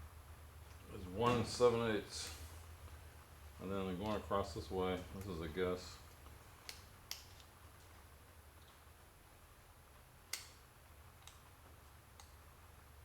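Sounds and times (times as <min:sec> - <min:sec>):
sharp click: 0:10.3 - 0:10.6.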